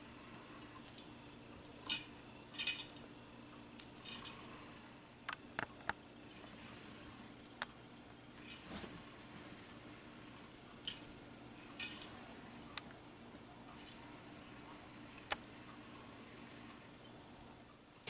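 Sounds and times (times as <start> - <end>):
faint steady hum: 0.0 - 18.0
cat toy jingling: 0.8 - 4.8, 10.5 - 14.4.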